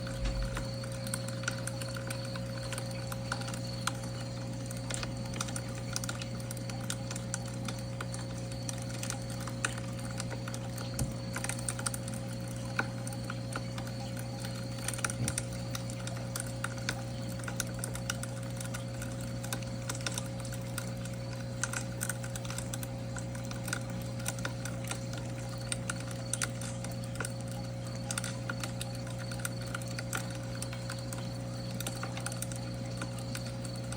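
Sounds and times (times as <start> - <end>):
low hum: 0.0 - 1.8.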